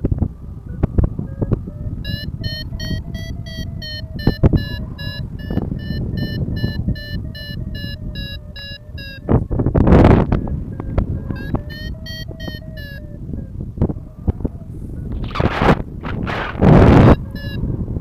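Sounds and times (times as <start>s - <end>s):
wind rumbling on microphone: 0.0s - 18.0s
short high beeps: 2.1s - 9.2s, 11.4s - 13.0s, 17.0s - 17.6s.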